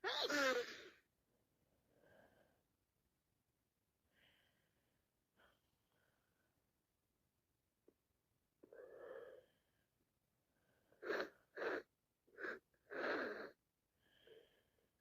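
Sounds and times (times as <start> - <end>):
wheezy breath in: 10.6 - 14.8.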